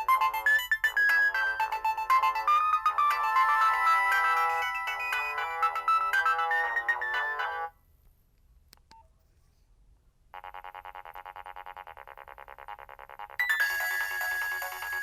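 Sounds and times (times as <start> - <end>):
electronic ringtone melody: 0.0 - 7.7, 12.8 - 15.0
pulsed buzzing ringtone: 0.0 - 7.7, 10.4 - 15.0.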